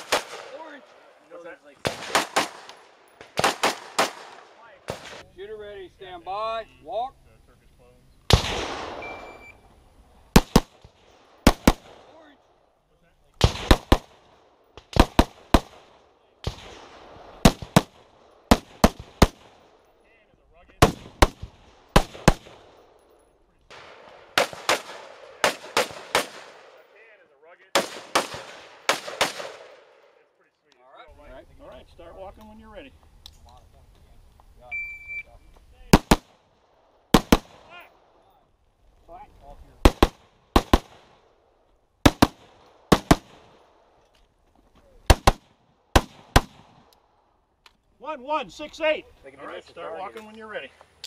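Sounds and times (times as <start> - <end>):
rifle shots: 0.0 - 1.0, 1.8 - 5.2, 8.3 - 9.5, 10.3 - 12.2, 13.4 - 19.8, 20.8 - 22.9, 23.7 - 26.9, 27.7 - 30.1, 35.9 - 36.4, 37.1 - 37.8, 39.8 - 41.4, 42.0 - 43.9, 45.0 - 46.9.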